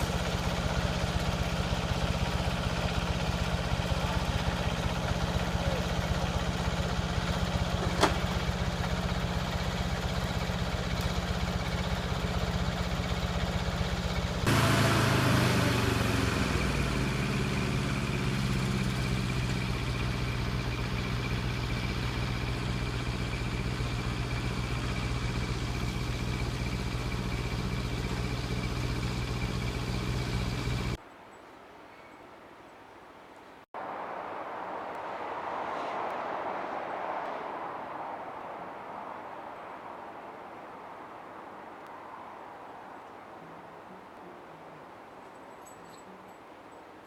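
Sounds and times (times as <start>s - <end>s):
engine running: 0.0s - 31.0s.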